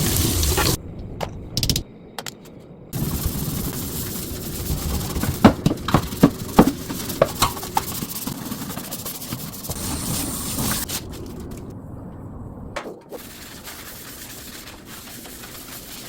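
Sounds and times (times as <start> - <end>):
steady rushing hiss: 0.0 - 0.8, 3.0 - 11.7, 12.9 - 16.0
knocks and clatters of hard items: 4.9 - 8.9.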